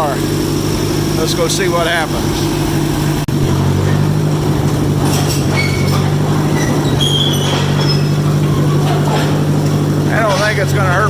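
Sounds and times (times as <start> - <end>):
crawler tractor engine running: 0.0 - 11.0
metallic track squeals and clanks: 3.4 - 11.0.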